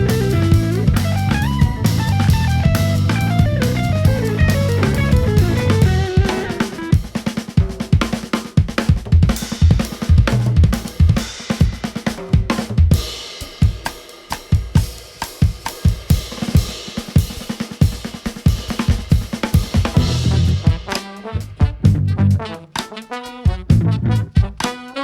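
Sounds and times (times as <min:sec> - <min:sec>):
jazz band playing: 0:00.0 - 0:07.3, 0:19.8 - 0:25.0
drum kit break: 0:00.0 - 0:25.0.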